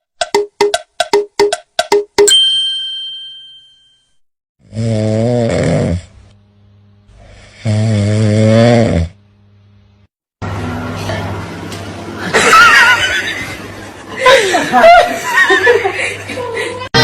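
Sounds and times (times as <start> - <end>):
ringing ding: 2.2 - 4.2
buzzy snores: 4.6 - 6.4, 7.0 - 9.2.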